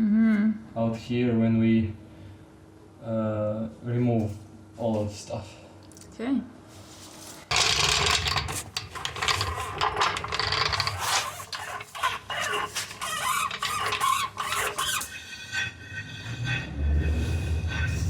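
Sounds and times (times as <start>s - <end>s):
metal tools clicking and scraping: 7.5s - 15.2s.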